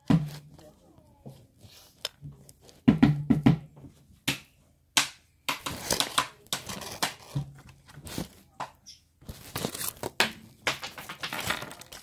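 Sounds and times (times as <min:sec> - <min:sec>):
rustling and crackling: 0:00.2 - 0:02.9, 0:05.6 - 0:12.0.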